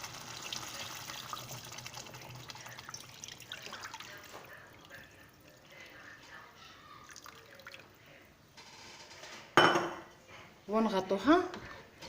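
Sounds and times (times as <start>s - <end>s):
tomato sauce sizzling and bubbling: 0.0s - 6.0s.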